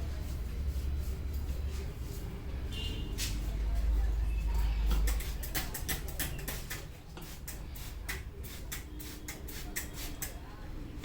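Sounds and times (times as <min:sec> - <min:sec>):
hands snapping clicks on scalp: 0:05.0 - 0:06.9.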